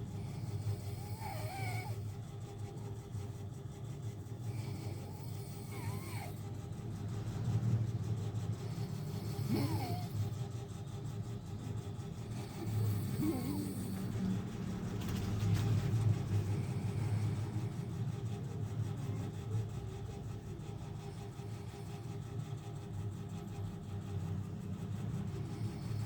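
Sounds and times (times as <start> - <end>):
woman snoring: 0.6 - 2.0, 5.0 - 6.4, 9.2 - 10.2, 12.5 - 14.1.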